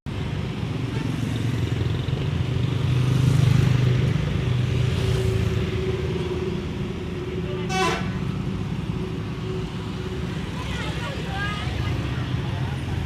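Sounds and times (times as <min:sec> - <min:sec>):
vehicle engines passing: 0:00.1 - 0:13.0.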